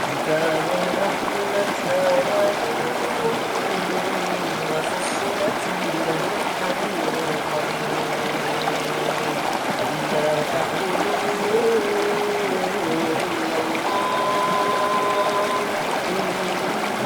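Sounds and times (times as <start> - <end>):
faint voice chanting: 0.0 - 17.0
flowing river water: 0.0 - 17.0.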